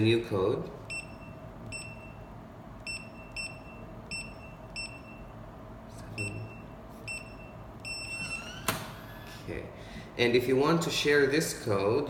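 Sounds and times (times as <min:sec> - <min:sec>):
keypad beeps: 0:00.9 - 0:02.2, 0:02.8 - 0:05.3, 0:06.2 - 0:08.4.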